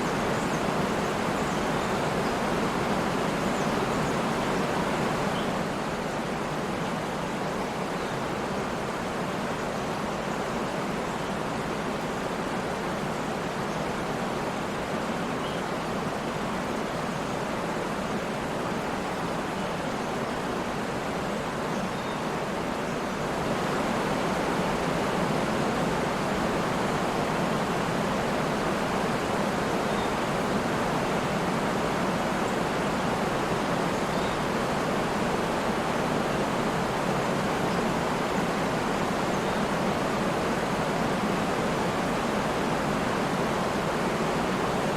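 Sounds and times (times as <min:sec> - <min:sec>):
waterfall rushing: 0:10.5 - 0:44.9.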